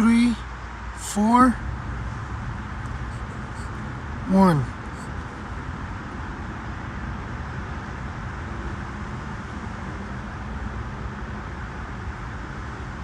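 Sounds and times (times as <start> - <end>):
faint hum: 0.0 - 13.0
low vehicle rumble: 0.0 - 13.0.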